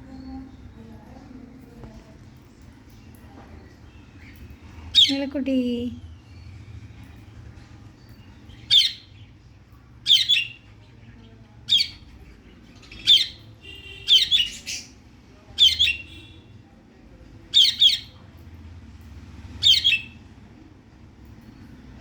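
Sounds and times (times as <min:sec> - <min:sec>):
cockatiel calling: 0:13.1 - 0:14.9.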